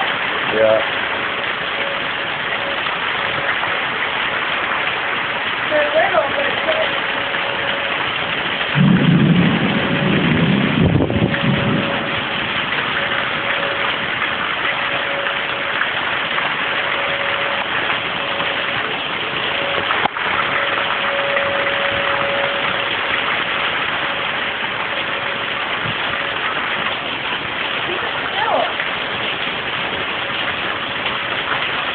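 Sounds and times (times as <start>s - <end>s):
distant tornado siren: 0.0s - 31.9s
heavy rain and wind: 0.0s - 31.9s
low rumble: 7.2s - 28.0s.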